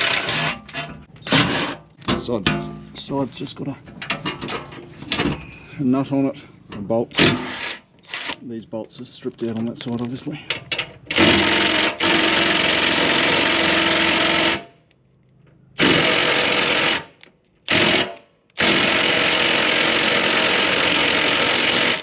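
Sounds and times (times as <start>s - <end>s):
impact wrench bursts: 7.2s - 8.4s, 11.1s - 14.7s, 15.8s - 22.0s.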